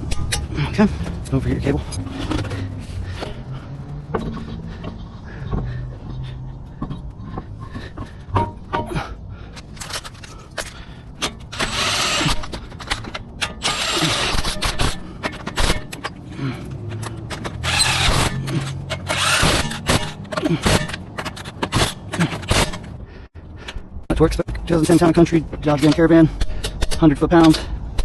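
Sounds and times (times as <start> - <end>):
handling clicks and knocks: 4.1 - 11.7, 14.4 - 17.7, 19.8 - 23.0
cordless impact wrench bursts: 11.5 - 15.8, 17.4 - 20.9.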